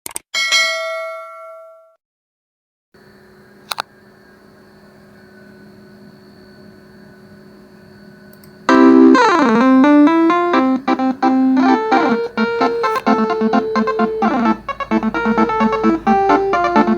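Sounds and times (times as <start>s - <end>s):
faint steady hum: 3.0s - 16.9s
bus horn melody: 8.7s - 16.9s.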